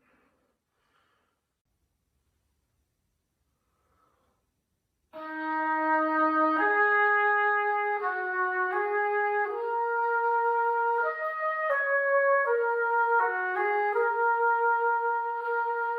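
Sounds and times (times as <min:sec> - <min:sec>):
oboe playing slow melody: 0:05.2 - 0:15.9.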